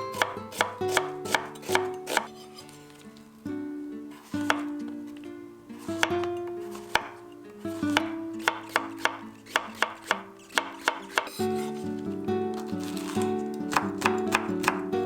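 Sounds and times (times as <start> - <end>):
soft background music: 0.0 - 15.0
knife chopping vegetables: 0.1 - 2.7, 4.1 - 4.7, 5.9 - 7.2, 7.8 - 15.0.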